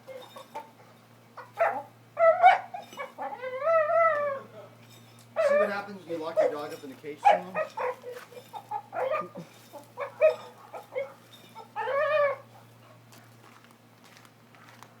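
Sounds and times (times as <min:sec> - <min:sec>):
dog vocalising: 0:01.4 - 0:04.5, 0:05.3 - 0:12.7.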